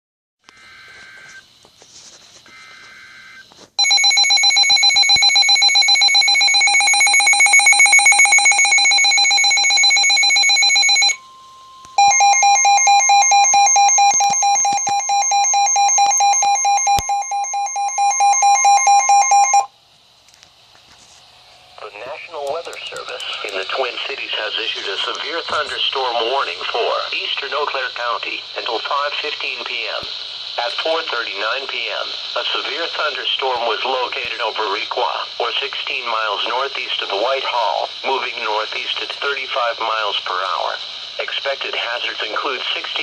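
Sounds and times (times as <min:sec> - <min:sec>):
steady high warning tone: 0:02.4 - 0:19.8, 0:20.8 - 0:42.9
pulsing buzzing alarm: 0:02.5 - 0:19.7
faint data bursts: 0:20.3 - 0:43.0.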